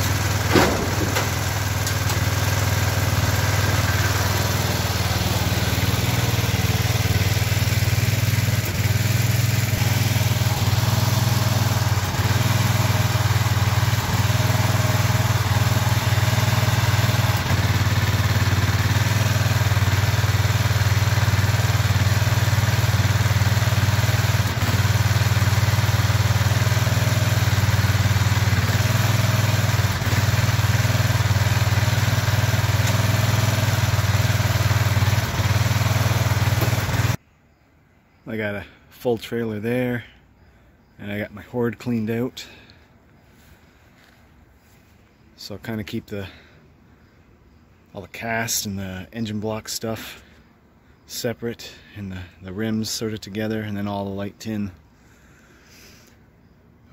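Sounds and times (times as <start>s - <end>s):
engine idling: 0.0s - 37.2s.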